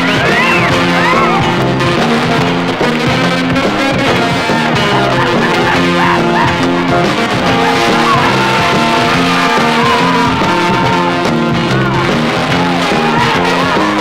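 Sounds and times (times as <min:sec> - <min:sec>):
garage rock band playing: 0:00.0 - 0:14.0.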